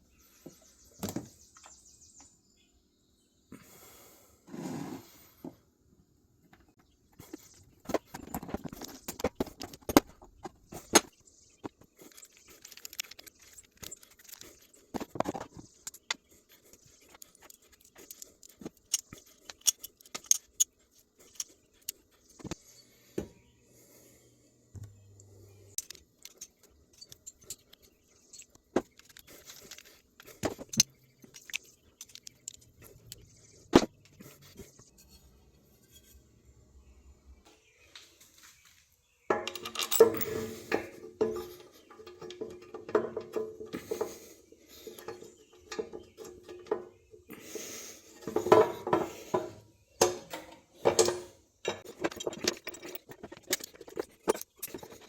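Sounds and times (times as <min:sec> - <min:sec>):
metal parts and tools clinking: 0:07.2 - 0:16.2, 0:16.8 - 0:22.6, 0:25.7 - 0:36.3, 0:39.3 - 0:47.4, 0:48.1 - 0:55.0.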